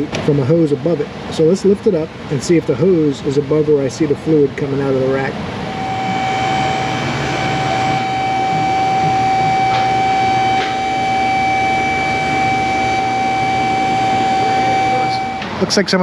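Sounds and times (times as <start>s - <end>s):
hydraulic pump motor whining: 5.3s - 15.7s.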